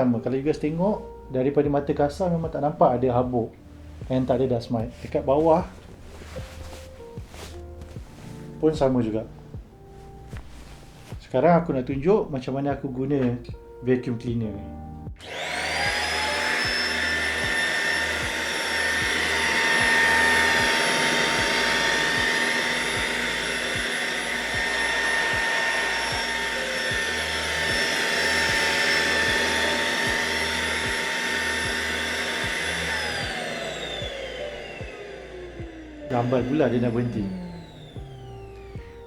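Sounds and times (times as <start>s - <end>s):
handheld vacuum cleaner motor whining: 15.2s - 39.0s.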